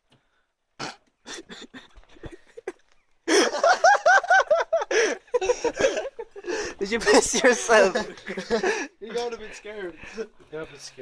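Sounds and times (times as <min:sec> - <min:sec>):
young man laughing hard: 0:01.3 - 0:09.0.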